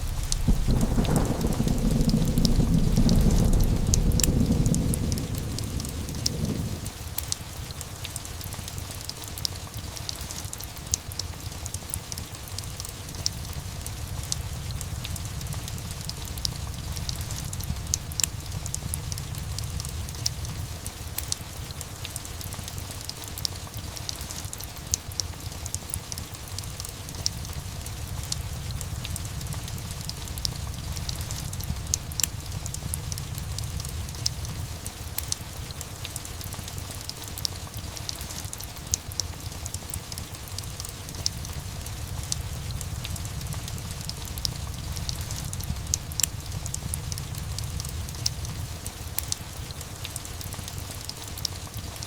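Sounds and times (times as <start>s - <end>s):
low rumble: 0.0s - 7.0s, 13.3s - 20.8s, 27.3s - 34.8s, 41.2s - 48.8s
log fire crackling: 0.0s - 52.0s
steady rain: 0.0s - 52.0s.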